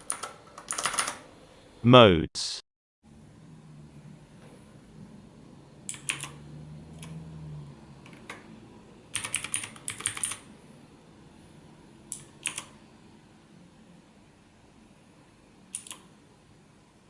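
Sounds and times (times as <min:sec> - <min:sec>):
mechanical keyboard clicking: 0:00.0 - 0:01.2, 0:05.9 - 0:06.4, 0:09.1 - 0:10.4, 0:12.1 - 0:12.7, 0:15.7 - 0:16.0.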